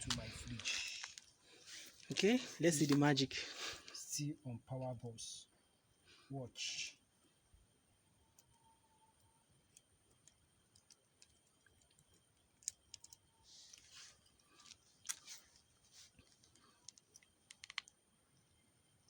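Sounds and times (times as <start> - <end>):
wires rustling: 0.0 - 3.2, 9.7 - 18.0
small clicks of connectors: 12.6 - 13.8, 16.3 - 18.0.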